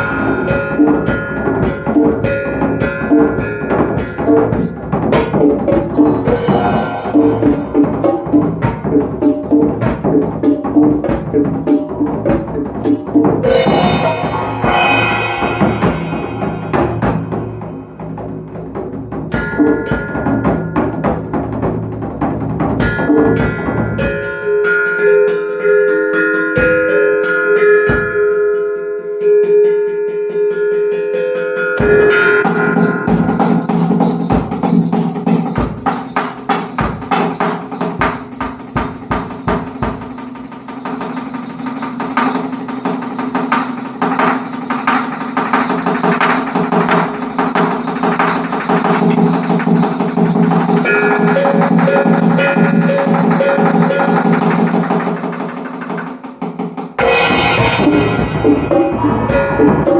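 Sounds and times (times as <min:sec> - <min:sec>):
fast drum hits: 0:00.0 - 0:18.5, 0:40.9 - 0:59.9
ringing tones: 0:05.8 - 0:09.6, 0:13.4 - 0:18.1, 0:50.8 - 0:55.9, 0:57.0 - 0:59.9
low drone: 0:05.9 - 0:09.0, 0:13.4 - 0:18.6, 0:57.0 - 0:59.9.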